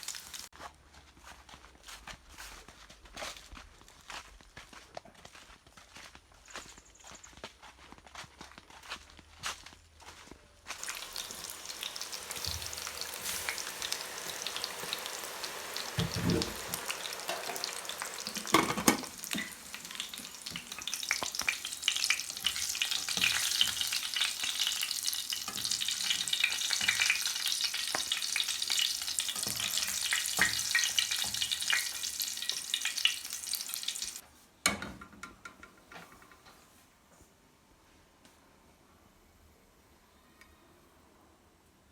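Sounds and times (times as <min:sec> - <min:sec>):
food sizzling in a pan: 0:00.0 - 0:00.5, 0:10.8 - 0:34.2
utensil stirring: 0:10.8 - 0:34.2
knocks against a pan: 0:16.0 - 0:16.7, 0:18.4 - 0:19.5.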